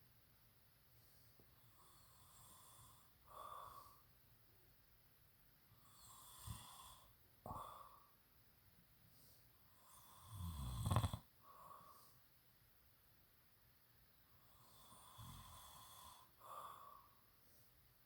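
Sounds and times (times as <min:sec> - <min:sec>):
person snoring: 0:05.8 - 0:07.9, 0:09.7 - 0:12.0, 0:14.5 - 0:17.0.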